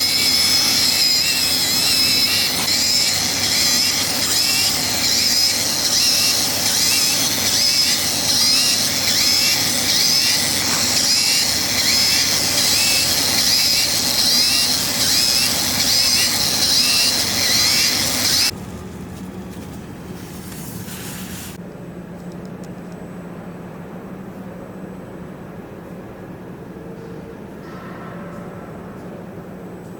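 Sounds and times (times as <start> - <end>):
cutting machine hissing buzz: 0.0 - 18.6.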